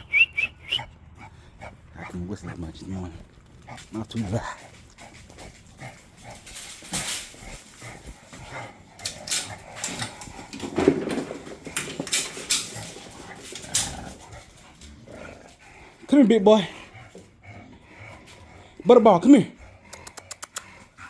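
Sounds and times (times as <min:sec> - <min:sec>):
dogs scuffing and bumping: 0:02.7 - 0:16.1.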